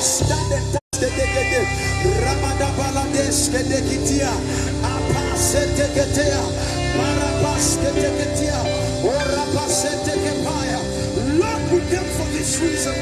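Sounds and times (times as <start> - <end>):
worship band music: 0.0 - 13.0
voices singing: 1.0 - 13.0.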